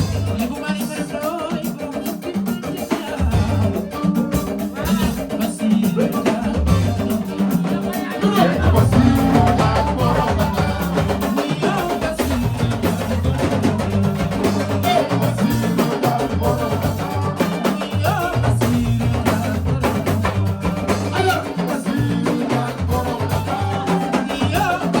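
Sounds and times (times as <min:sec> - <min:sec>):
bass line: 0:00.0 - 0:00.6, 0:03.2 - 0:05.4, 0:06.0 - 0:25.0
drums and percussion beat: 0:00.0 - 0:25.0.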